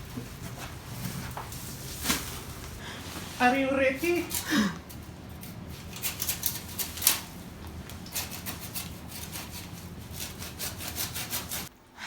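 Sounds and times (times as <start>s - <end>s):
hand saw rasping through wood: 8.0s - 11.7s.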